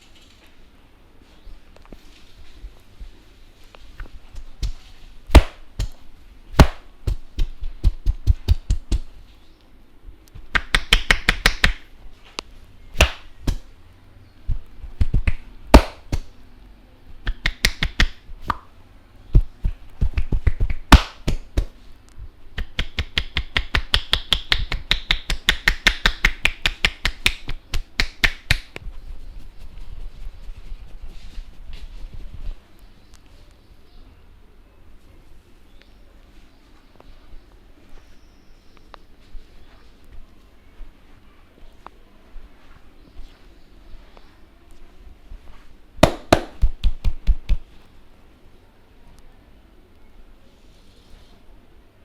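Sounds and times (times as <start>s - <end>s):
hands tapping and chopping: 4.4s - 6.0s, 6.6s - 9.1s, 15.0s - 16.3s, 46.0s - 47.6s
loud sharp hand slaps: 4.4s - 6.0s, 6.6s - 9.1s, 10.4s - 11.8s, 13.0s - 13.7s, 15.0s - 16.3s, 17.2s - 18.7s, 20.0s - 21.8s, 22.6s - 28.8s, 46.0s - 47.7s.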